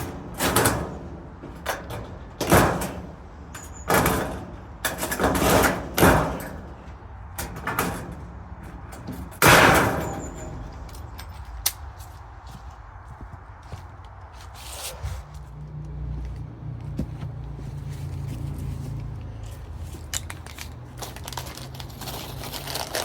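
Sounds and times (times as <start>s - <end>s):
steel panels clanking and scraping: 0.0s - 11.8s.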